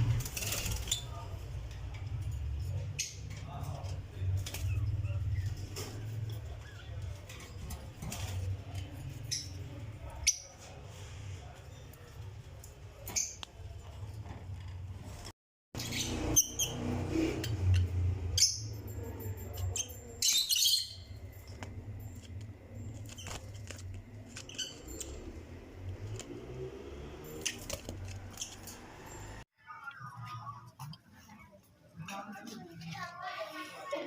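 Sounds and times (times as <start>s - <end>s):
lovebirds chirping: 15.8s - 30.5s.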